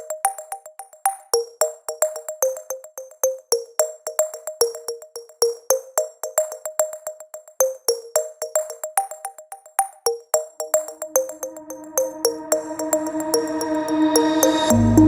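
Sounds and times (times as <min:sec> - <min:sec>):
synthesizer melody: 0:10.9 - 0:15.0.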